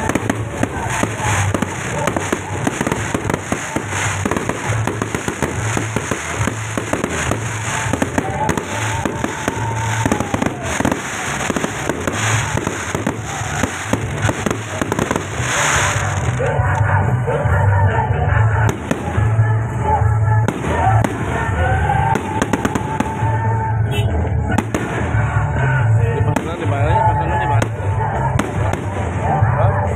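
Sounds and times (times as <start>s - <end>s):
fireworks popping and crackling: 0.0s - 17.1s, 18.3s - 23.7s, 24.4s - 29.9s.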